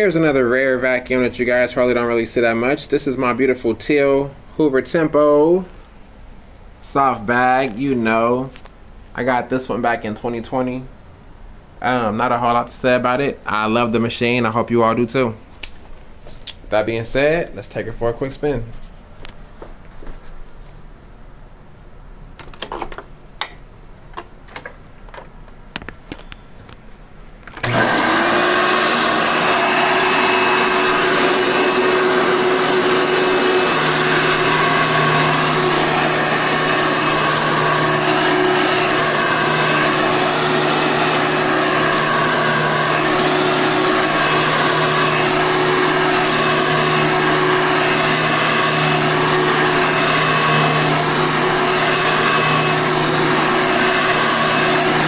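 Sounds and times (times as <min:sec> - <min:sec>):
vacuum cleaner running with whine: 0:27.6 - 0:55.0.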